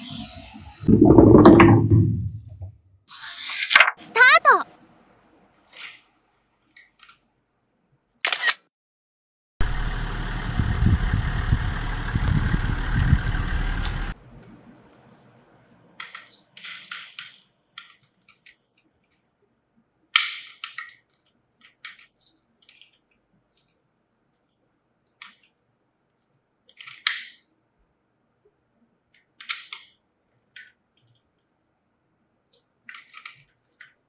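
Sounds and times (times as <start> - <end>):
toy car wheels rolling: 16.0 - 18.5
plastic clicks from handling: 26.7 - 27.4, 29.2 - 31.2, 32.5 - 34.0.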